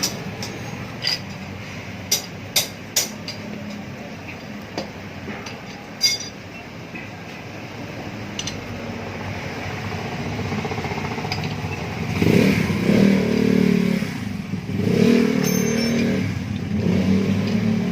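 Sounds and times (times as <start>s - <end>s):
metallic clinks of hand tools: 5.5s - 6.4s, 15.4s - 16.2s.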